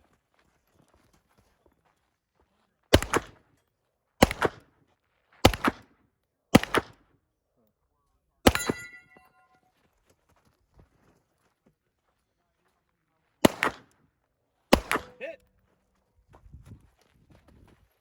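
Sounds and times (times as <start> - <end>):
gunshots: 2.9 - 3.4, 4.2 - 4.6, 5.4 - 5.8, 6.5 - 7.0, 8.5 - 9.2, 13.4 - 13.9, 14.7 - 15.4
metallic ringing: 8.5 - 9.5.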